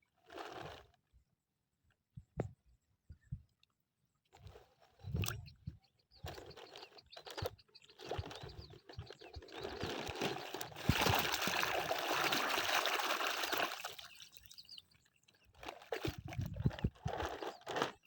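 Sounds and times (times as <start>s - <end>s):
water splashing and pouring: 10.1s - 14.8s.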